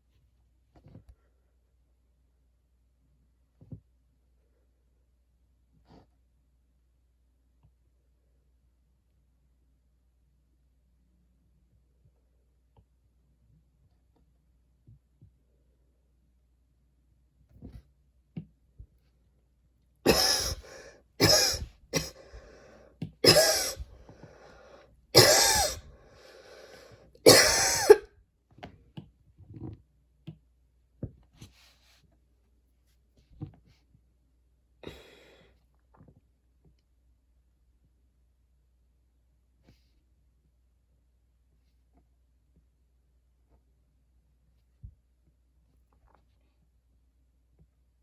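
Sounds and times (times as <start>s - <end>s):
woman coughing: 20.1s - 22.6s, 23.2s - 24.0s, 25.2s - 25.9s, 27.3s - 28.1s
breath: 20.1s - 27.1s, 34.8s - 35.6s.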